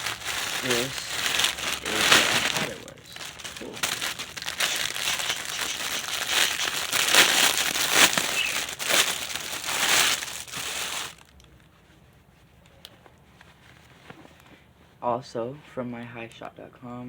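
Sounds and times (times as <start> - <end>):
packaging crinkling and rustling: 0.0 - 11.8.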